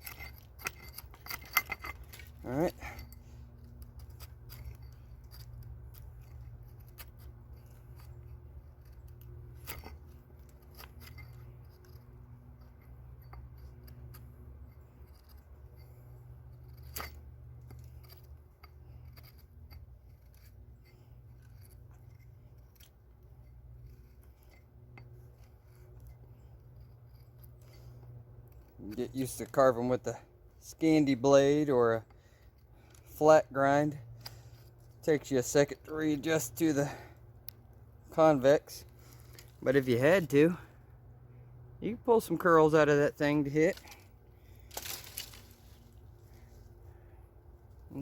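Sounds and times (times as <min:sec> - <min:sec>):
axe blade shaving wood: 0:00.0 - 0:29.8.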